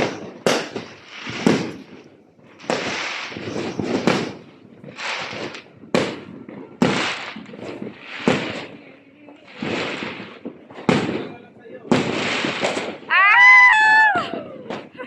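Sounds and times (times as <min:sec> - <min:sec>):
fireworks bangs with echo: 0:00.0 - 0:15.0.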